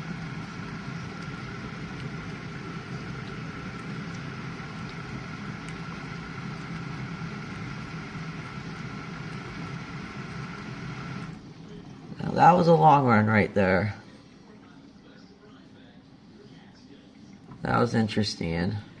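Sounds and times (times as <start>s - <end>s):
high-pitched whine: 0.0s - 13.9s
dishwasher hum: 0.0s - 15.1s, 16.5s - 19.0s.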